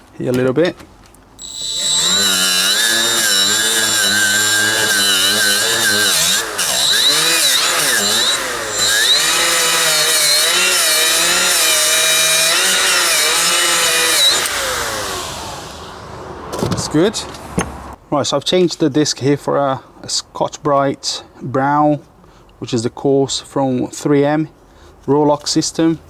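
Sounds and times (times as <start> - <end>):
die grinder whining: 1.4 - 16.2.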